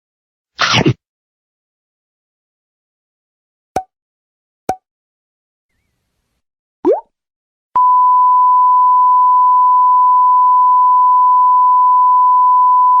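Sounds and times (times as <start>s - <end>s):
censor bleep tone: 7.8s - 13.0s.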